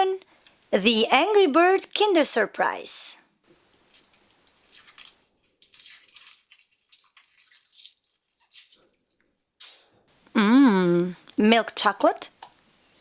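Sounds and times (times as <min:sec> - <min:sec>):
foil wrapper crinkling: 0:03.7 - 0:09.9.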